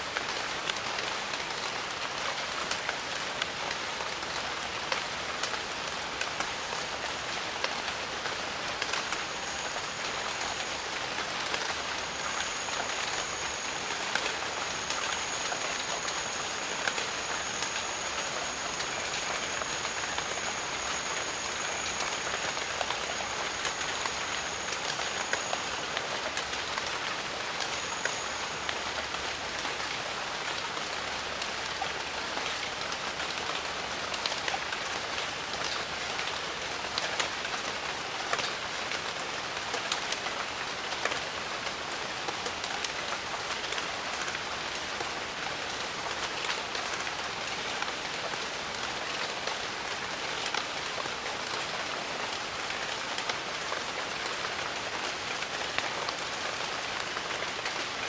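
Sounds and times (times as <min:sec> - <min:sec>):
rain falling: 0:00.0 - 0:58.0
raindrops ticking close by: 0:00.1 - 0:57.9
thin high steady tone: 0:04.0 - 0:30.0.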